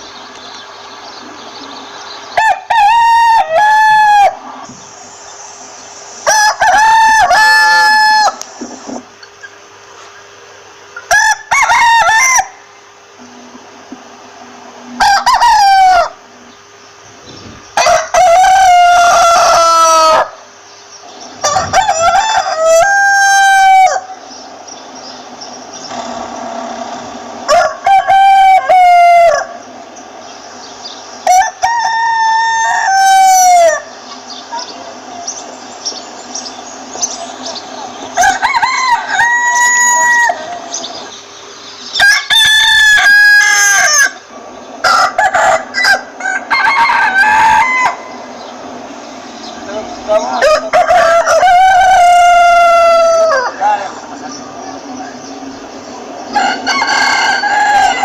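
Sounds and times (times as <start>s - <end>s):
rooster crowing: 2.3s - 4.7s, 6.2s - 8.5s, 11.0s - 13.5s, 14.8s - 16.4s, 17.7s - 20.6s, 21.3s - 24.4s, 25.9s - 29.8s, 31.2s - 35.0s, 37.8s - 41.1s, 41.9s - 49.0s, 50.0s - 58.0s.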